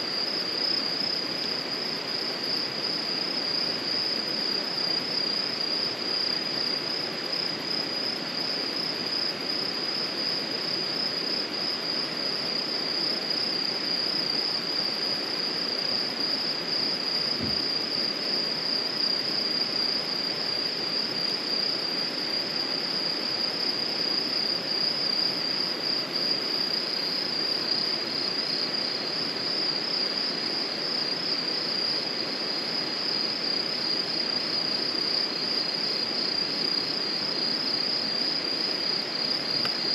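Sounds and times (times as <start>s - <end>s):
background hiss: 0.0s - 39.9s
crickets trilling: 0.0s - 39.9s
soft low thump: 17.4s - 17.7s.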